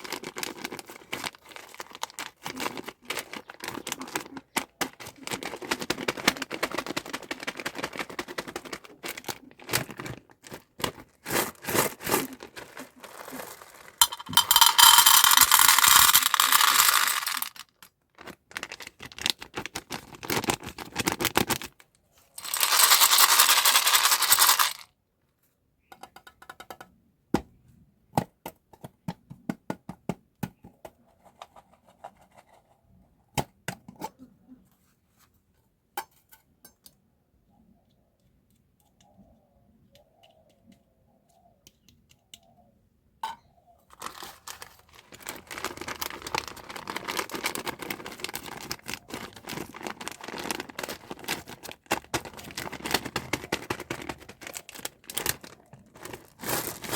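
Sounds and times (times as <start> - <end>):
candy wrapper crinkling: 0.0 - 21.8, 22.4 - 24.9, 43.9 - 56.9.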